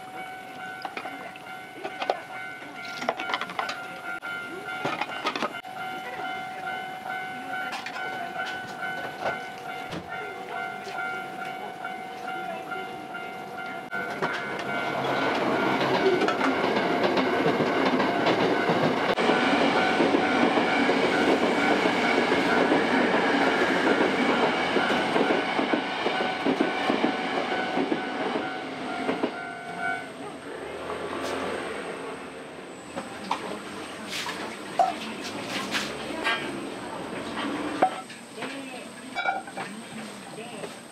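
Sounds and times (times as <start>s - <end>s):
level crossing bell ringing: 0.0s - 22.9s, 27.5s - 30.2s
train wheels clattering over rails: 13.8s - 30.1s.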